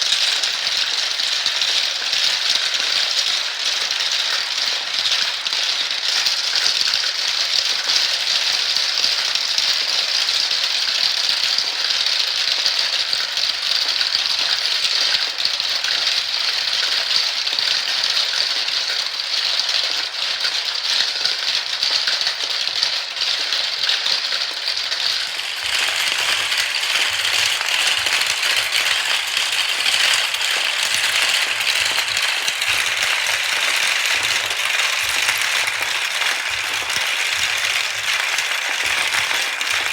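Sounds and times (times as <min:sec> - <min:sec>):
balls rattling down marble run: 0:24.2 - 0:39.9.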